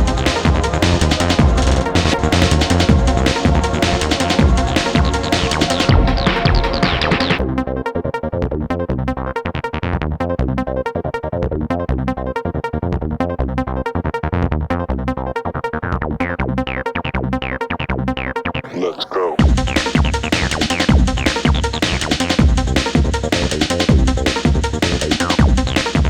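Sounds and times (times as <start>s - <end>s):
electronic dance music: 0.0s - 7.9s, 18.6s - 26.0s.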